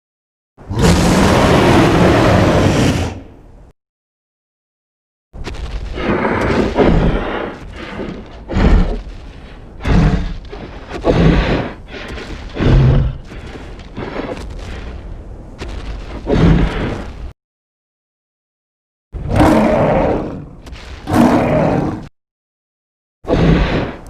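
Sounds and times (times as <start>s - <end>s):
dinosaur roars: 0.7s - 3.3s, 19.2s - 22.1s, 23.3s - 24.0s.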